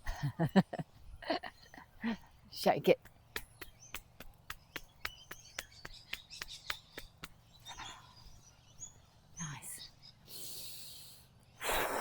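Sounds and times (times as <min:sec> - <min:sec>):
faint bird chirps: 0:03.3 - 0:12.0.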